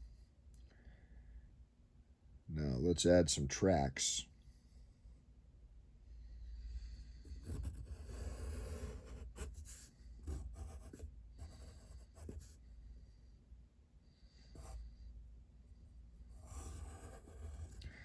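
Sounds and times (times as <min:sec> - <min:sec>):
drawing tool scratching paper: 0:07.3 - 0:12.6, 0:16.3 - 0:17.8.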